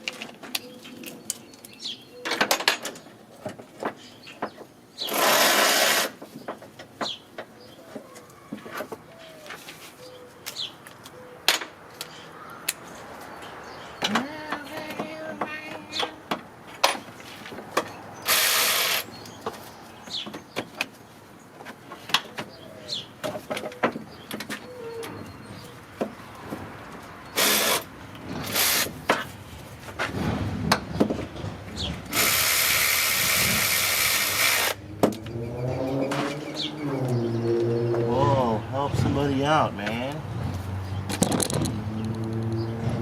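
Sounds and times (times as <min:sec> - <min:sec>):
ratcheting power tool bursts: 0:05.0 - 0:06.2, 0:18.2 - 0:19.1, 0:27.4 - 0:28.9, 0:32.1 - 0:34.8.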